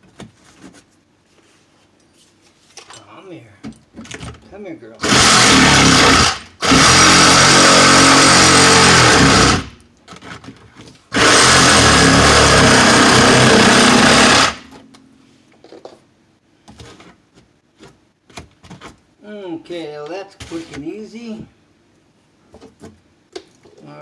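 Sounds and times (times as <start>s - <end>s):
reciprocating saw cutting drywall: 5.0s - 9.8s, 11.1s - 14.7s.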